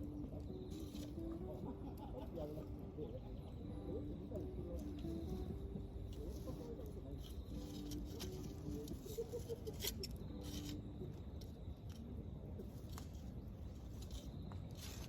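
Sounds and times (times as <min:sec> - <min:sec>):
wood fire crackling: 0:04.3 - 0:15.0.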